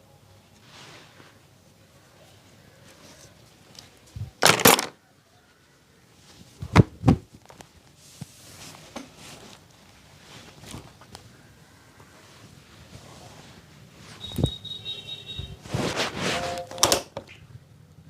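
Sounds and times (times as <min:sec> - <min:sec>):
soft rubbing of skin: 0:07.6 - 0:14.6, 0:15.2 - 0:16.6.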